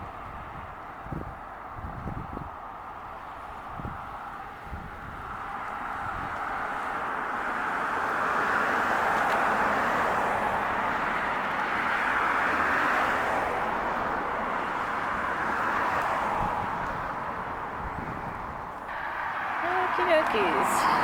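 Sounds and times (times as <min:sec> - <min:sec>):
passing vehicle rushing: 0:05.6 - 0:21.0.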